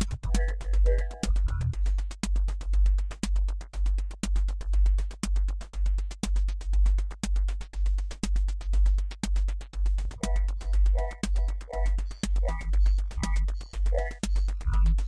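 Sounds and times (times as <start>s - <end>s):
electronic synthesizer music: 0.1s - 1.8s, 10.2s - 15.0s.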